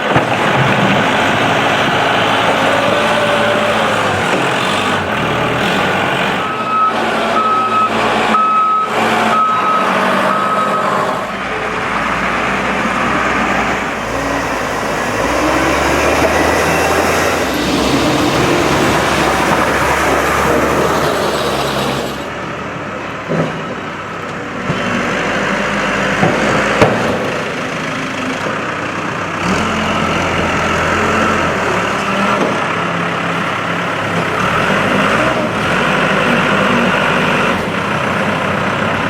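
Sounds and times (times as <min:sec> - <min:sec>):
heavy truck engine running: 0:00.0 - 0:39.0
reversing alarm beeping: 0:06.3 - 0:11.3.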